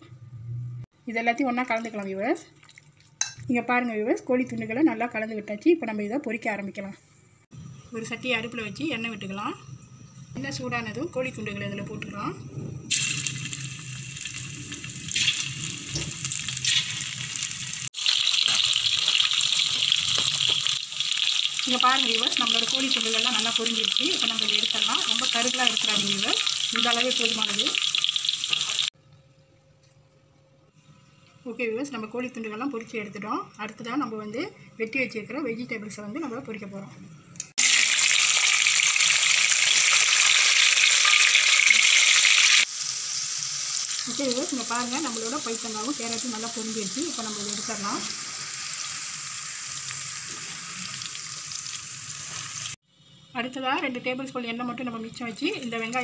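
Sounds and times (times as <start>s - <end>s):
chicken deep-frying in oil: 12.9s - 29.0s, 37.6s - 52.8s.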